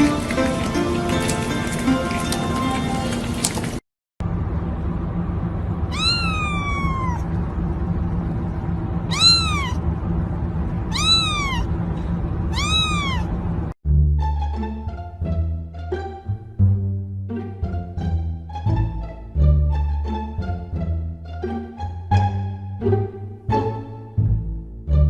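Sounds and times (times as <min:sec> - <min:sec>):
plucked string music: 0:00.0 - 0:03.3, 0:14.0 - 0:24.4
cat meowing: 0:05.9 - 0:07.4, 0:09.1 - 0:09.8, 0:10.9 - 0:11.7, 0:12.5 - 0:13.4.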